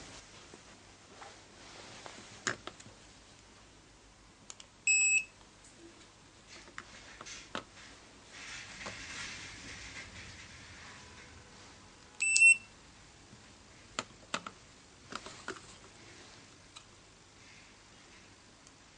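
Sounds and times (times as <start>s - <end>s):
pager beep: 4.9s - 5.3s, 12.2s - 12.7s.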